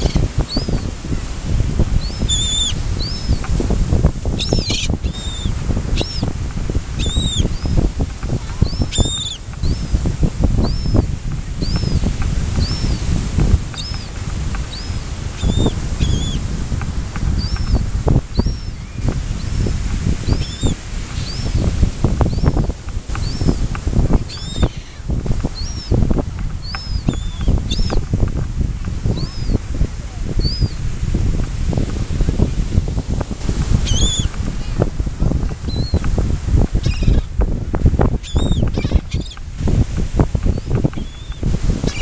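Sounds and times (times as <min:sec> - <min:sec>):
small birds chirping: 0:00.0 - 0:00.9, 0:02.0 - 0:03.5, 0:04.3 - 0:06.3, 0:07.0 - 0:13.1, 0:13.7 - 0:16.5, 0:17.3 - 0:28.1, 0:29.1 - 0:29.7, 0:30.3 - 0:30.8, 0:33.8 - 0:34.8, 0:35.6 - 0:36.0, 0:36.8 - 0:37.3, 0:38.2 - 0:39.4, 0:40.4 - 0:42.0.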